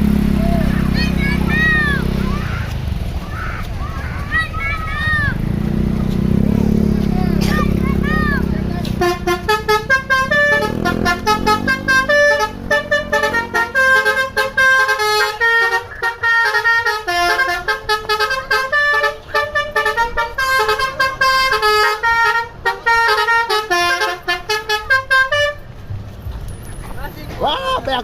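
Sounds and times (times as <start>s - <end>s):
multi-tone bus horn melody: 6.1s - 25.8s, 27.4s - 28.0s.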